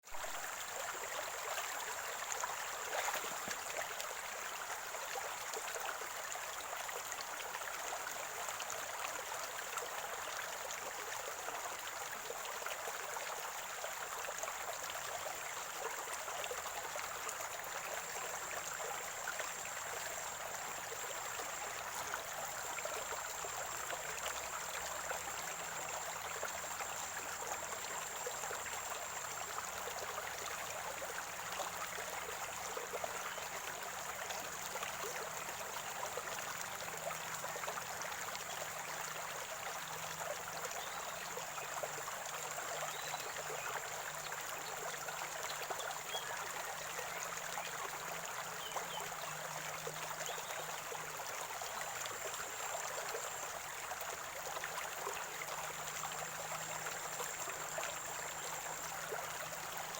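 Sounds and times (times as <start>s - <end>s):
stream gurgling: 0.0s - 59.9s.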